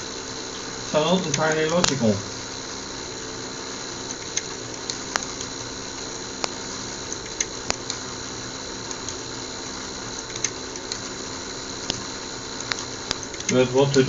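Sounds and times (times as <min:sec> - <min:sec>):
small electric motors whirring: 0:00.0 - 0:14.0
light clicks: 0:10.1 - 0:11.1.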